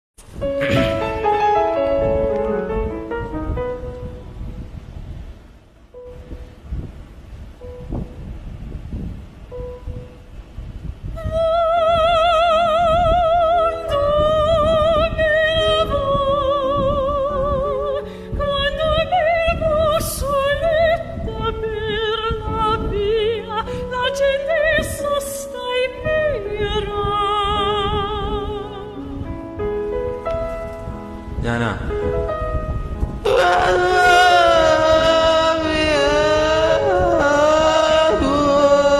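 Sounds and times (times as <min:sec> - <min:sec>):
chordal music backing: 0:00.3 - 0:05.2, 0:11.9 - 0:38.9
operatic singing voice: 0:00.6 - 0:01.5, 0:33.2 - 0:38.9.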